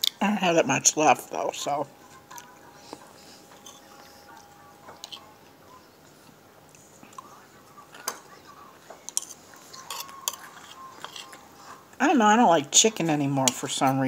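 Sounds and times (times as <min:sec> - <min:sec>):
person chewing soup: 0:03.5 - 0:08.1, 0:09.0 - 0:12.0.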